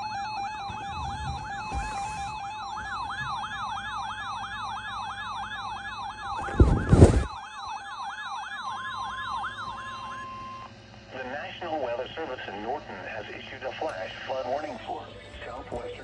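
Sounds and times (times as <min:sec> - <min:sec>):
emergency alert tone with warble: 0:00.0 - 0:10.7
loud thumps: 0:06.4 - 0:07.4.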